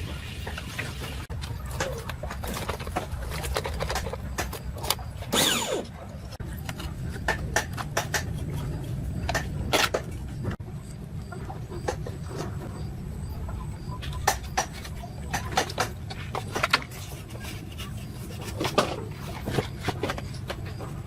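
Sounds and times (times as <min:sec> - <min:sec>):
small tools clicking and knocking: 0:01.3 - 0:10.5.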